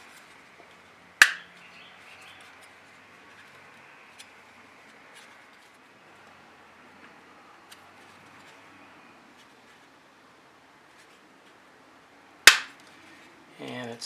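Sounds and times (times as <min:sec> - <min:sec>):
sharp plastic click: 0:01.2 - 0:01.4, 0:12.5 - 0:12.8.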